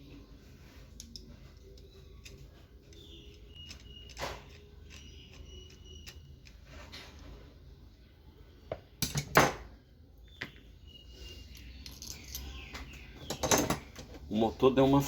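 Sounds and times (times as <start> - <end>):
thin squeaks: 0.6 - 7.8.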